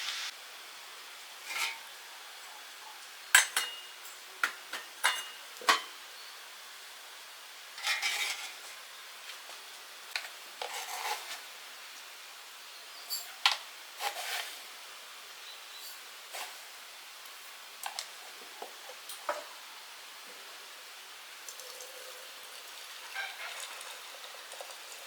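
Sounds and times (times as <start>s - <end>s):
metal utensil scraping a pan: 1.4s - 1.9s, 7.8s - 8.7s, 10.6s - 11.4s.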